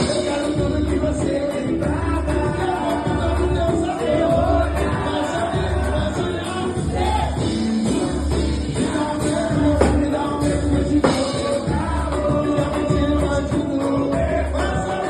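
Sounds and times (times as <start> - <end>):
percussion beat: 0.0 - 15.0
person singing: 0.0 - 15.0
samba band playing: 0.0 - 15.0.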